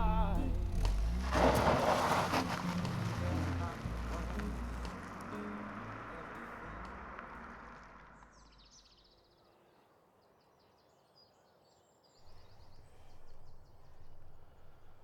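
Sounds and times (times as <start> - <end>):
low rumble: 0.0 - 5.2
bird chirping trills: 2.6 - 15.0.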